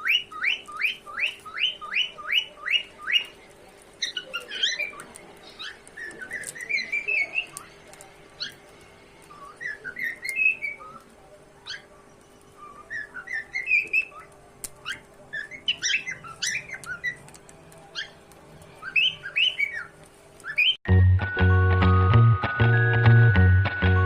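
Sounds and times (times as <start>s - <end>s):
cockatiel whistling and chirping: 0.0s - 3.4s, 9.3s - 11.0s, 11.6s - 17.2s, 18.8s - 20.8s
music: 20.9s - 24.0s.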